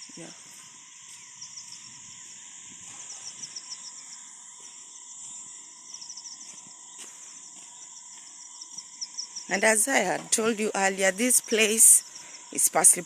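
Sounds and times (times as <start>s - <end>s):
crickets trilling: 0.0s - 13.0s.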